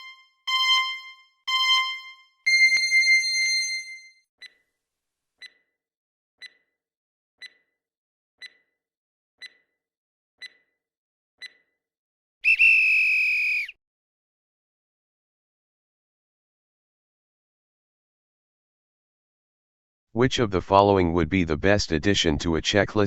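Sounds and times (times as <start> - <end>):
short timer ticks: 5.4 - 5.7, 6.4 - 6.7, 7.4 - 7.8, 8.4 - 8.8, 9.4 - 9.7, 10.4 - 10.8, 11.4 - 11.7.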